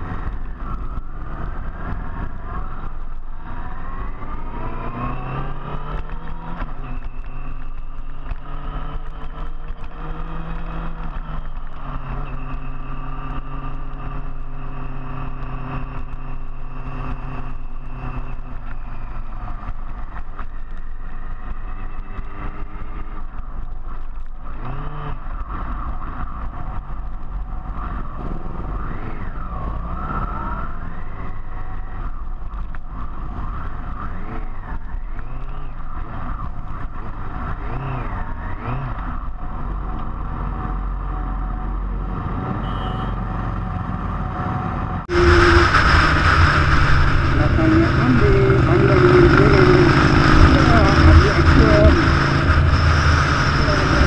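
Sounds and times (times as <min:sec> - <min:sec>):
wind rumble: 0:00.0 - 0:42.6, 0:43.3 - 0:54.0
motorcycle engine running: 0:45.0 - 0:54.0
short rising tone: 0:45.1 - 0:54.0.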